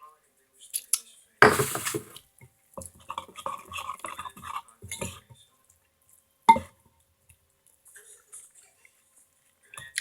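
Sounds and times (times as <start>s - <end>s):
spoon clinking on bowl: 1.4s - 2.0s.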